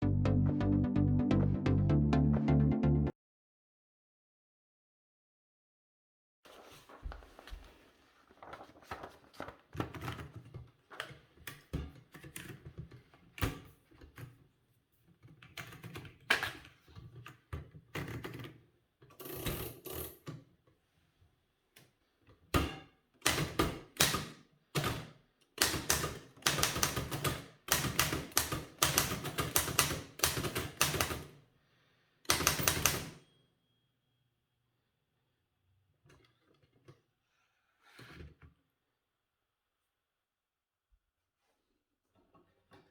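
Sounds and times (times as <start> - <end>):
manual typewriter keystrokes: 23.2 - 31.3, 32.3 - 33.2.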